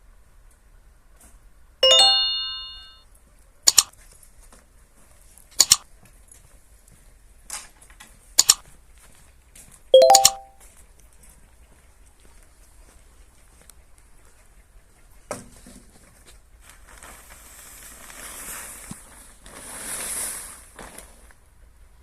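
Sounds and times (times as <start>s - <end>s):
metal ringing like a bell: 1.8s - 3.0s
sharp double clicks: 3.7s - 3.9s, 5.6s - 5.8s, 8.4s - 8.6s.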